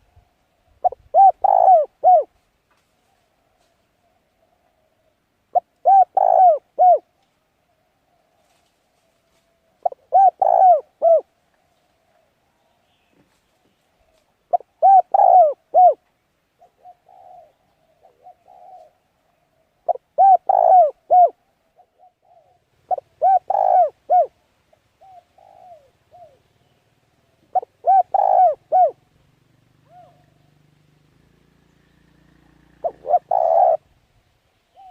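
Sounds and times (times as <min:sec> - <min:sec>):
bird calling low arched notes: 0:00.0 - 0:02.3, 0:04.0 - 0:07.1, 0:09.6 - 0:11.3, 0:14.0 - 0:16.0, 0:16.6 - 0:24.4, 0:25.0 - 0:29.1, 0:31.6 - 0:34.9.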